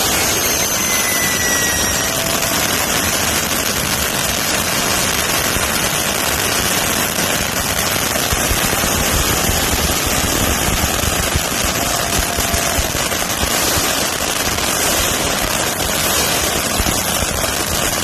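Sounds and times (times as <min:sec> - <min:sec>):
short whistle: 0:00.0 - 0:02.3
fireworks hissing and crackling: 0:00.0 - 0:18.0.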